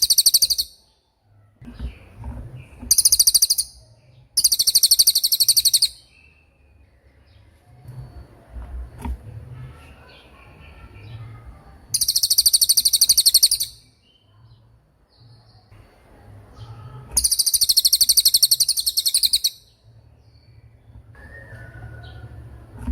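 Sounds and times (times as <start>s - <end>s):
canary trilling: 0.0s - 0.9s, 1.6s - 6.4s, 9.6s - 14.6s, 16.6s - 20.0s
soft twittering: 16.7s - 22.3s.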